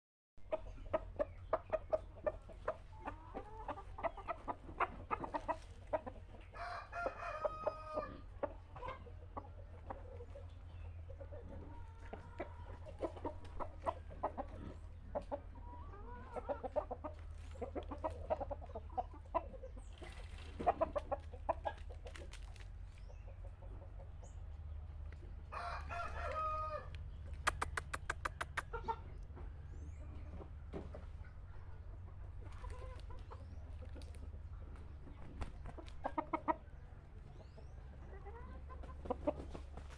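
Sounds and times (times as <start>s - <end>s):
chickens clucking: 0.4s - 39.9s
rooster crowing: 6.6s - 8.2s, 25.5s - 27.0s.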